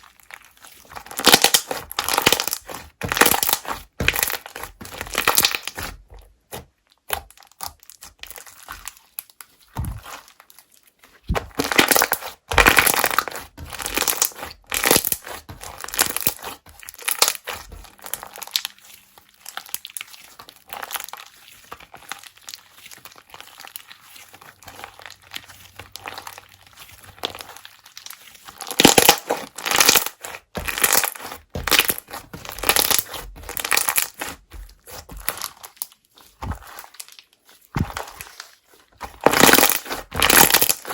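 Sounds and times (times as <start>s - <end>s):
slime crackling and squishing: 0.0s - 40.9s.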